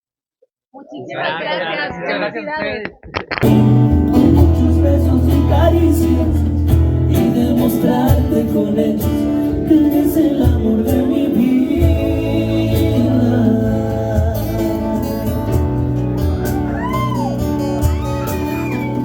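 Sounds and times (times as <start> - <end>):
person singing: 1.1 - 15.8
strummed guitar: 2.6 - 19.0
steady bass line: 3.4 - 19.0.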